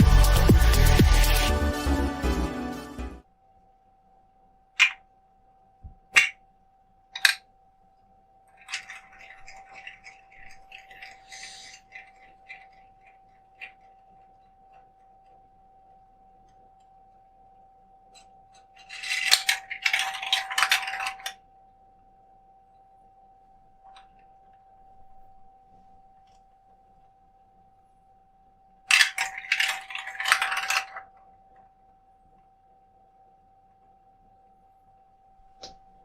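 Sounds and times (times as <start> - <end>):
faint steady hum: 3.2 - 36.0
marble clattering: 6.2 - 6.4, 8.5 - 14.8, 18.1 - 21.4, 28.9 - 31.6
marble rolling along track: 8.5 - 14.8, 18.2 - 21.4, 28.9 - 31.3.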